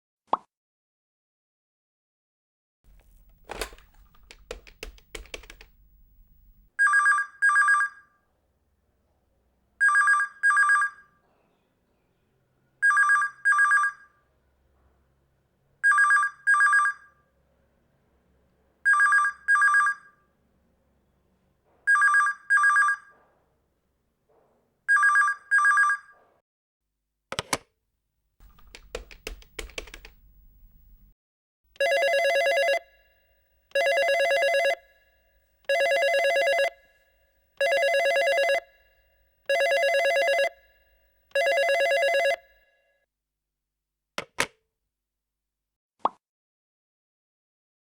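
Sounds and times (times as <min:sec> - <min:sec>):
telephone ringing: 0:02.9 - 0:08.2, 0:09.8 - 0:11.2, 0:12.8 - 0:14.2, 0:15.8 - 0:17.3, 0:18.8 - 0:20.3, 0:21.9 - 0:23.2, 0:24.9 - 0:26.2, 0:28.4 - 0:31.1, 0:31.8 - 0:42.8
sharp clicks: 0:03.0 - 0:06.4.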